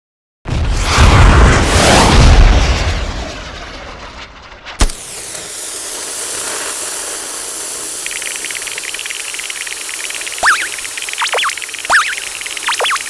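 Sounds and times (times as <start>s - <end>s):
steady hiss: 4.8s - 13.0s.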